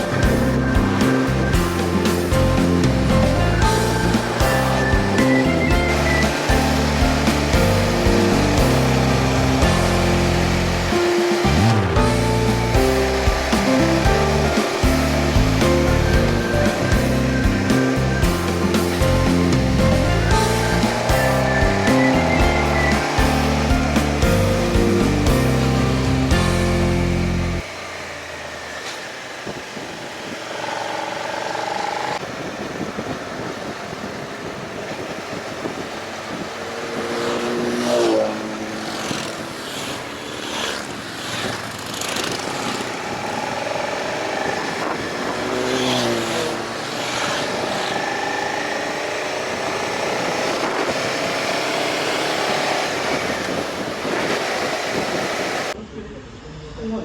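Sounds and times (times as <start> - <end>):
motorcycle engine running: 0.0 - 55.8
wind noise on microphone: 32.2 - 37.9, 40.8 - 55.8.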